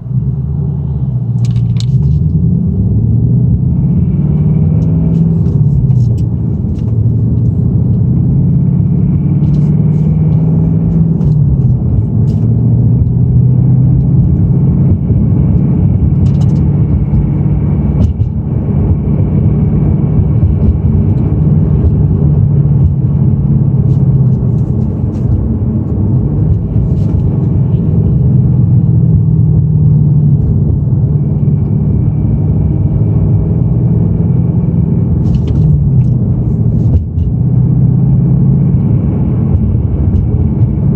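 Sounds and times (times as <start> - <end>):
car engine running: 0.0 - 40.9
engine rattle: 9.1 - 32.0.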